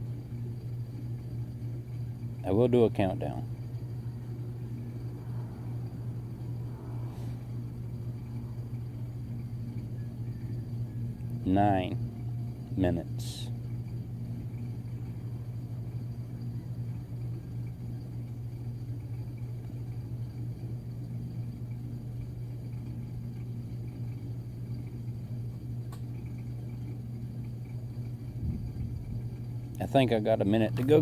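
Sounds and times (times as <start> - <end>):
washing machine humming: 0.0 - 31.0.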